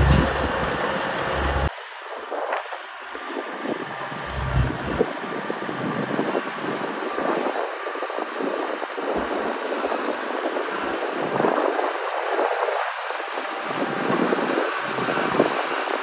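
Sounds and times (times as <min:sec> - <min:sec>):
wind buffeting microphone: 0:01.6 - 0:16.0
earthmoving machinery rattling: 0:04.0 - 0:05.1.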